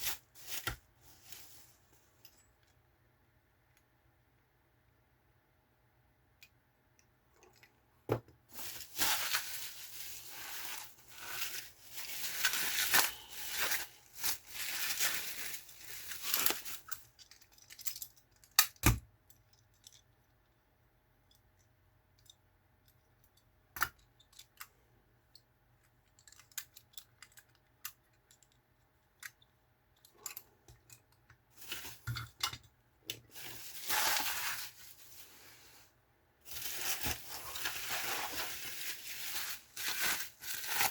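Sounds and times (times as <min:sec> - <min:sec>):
packaging crinkling and tearing: 0:08.5 - 0:18.6, 0:33.3 - 0:35.4, 0:36.5 - 0:40.9.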